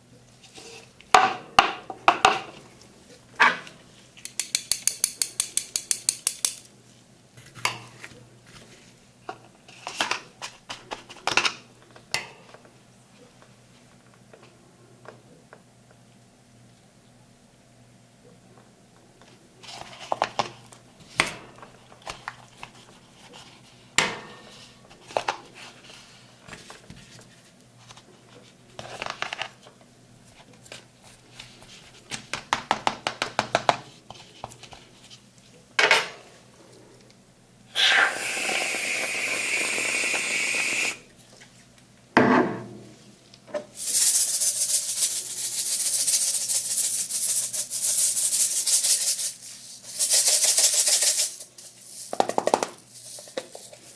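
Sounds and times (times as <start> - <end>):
metal spatulas tapping and clinking: 4.2 - 6.7.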